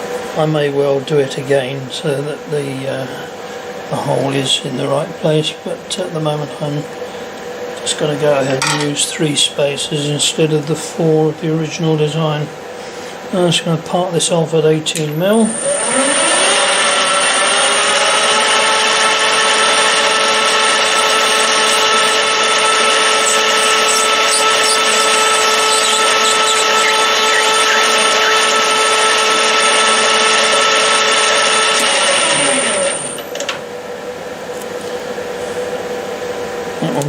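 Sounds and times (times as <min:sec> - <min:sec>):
lathe motor whining: 0:15.2 - 0:35.8
parting tool cutting nylon rod: 0:19.9 - 0:29.6.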